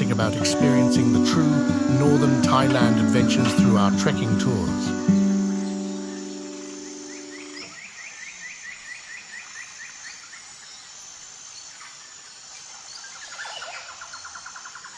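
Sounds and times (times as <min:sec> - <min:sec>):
short chirping calls: 0:00.0 - 0:09.9
high insect drone: 0:00.0 - 0:14.9.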